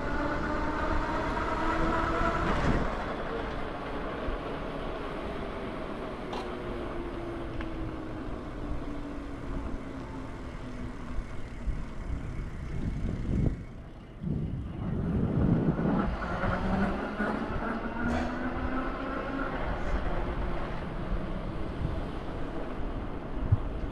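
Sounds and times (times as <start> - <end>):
passing vehicle motor whine: 0.0 - 23.9
rough traffic rumble: 0.0 - 23.9.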